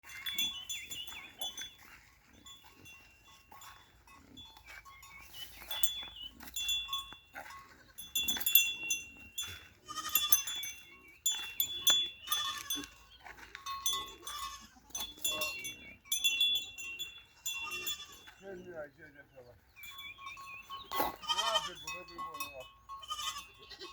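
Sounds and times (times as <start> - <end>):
short ringing tones: 8.0 - 13.0
goats bleating: 9.4 - 10.7, 12.2 - 13.0, 13.8 - 15.6, 17.2 - 18.4, 20.9 - 23.9.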